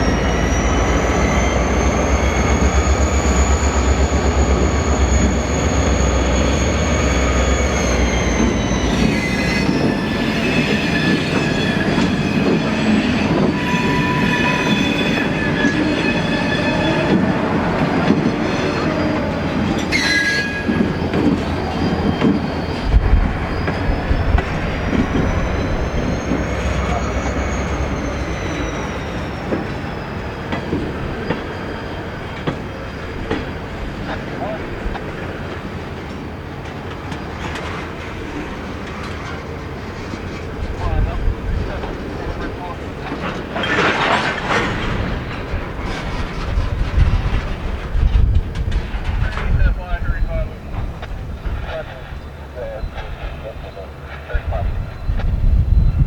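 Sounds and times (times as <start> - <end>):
wheels squealing: 0.0 - 34.8
train rolling past: 0.0 - 56.0
wheels clicking over rail joints: 33.2 - 49.6.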